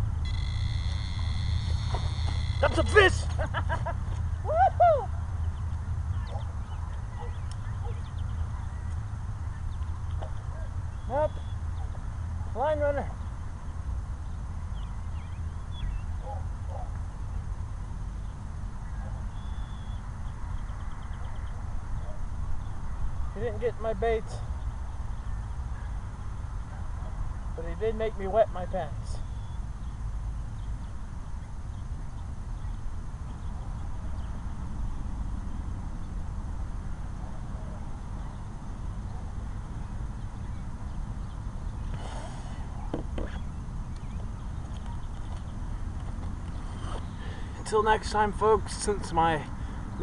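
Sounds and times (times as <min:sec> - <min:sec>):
faint bird chirps: 0:05.5 - 0:12.0, 0:18.2 - 0:22.8.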